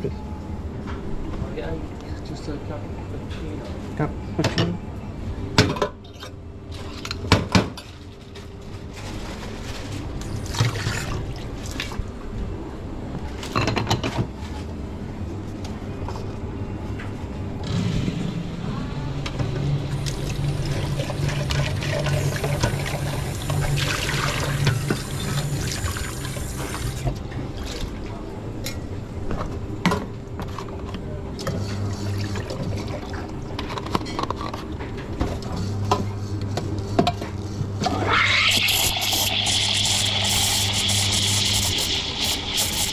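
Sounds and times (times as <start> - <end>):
espresso machine humming: 19.3 - 27.1, 37.8 - 42.9
liquid running: 19.8 - 27.2, 38.0 - 42.9.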